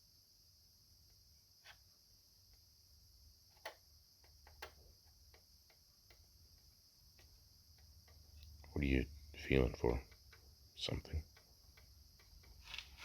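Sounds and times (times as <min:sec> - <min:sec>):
faint small clicks and taps: 0:03.5 - 0:08.7, 0:09.8 - 0:13.0.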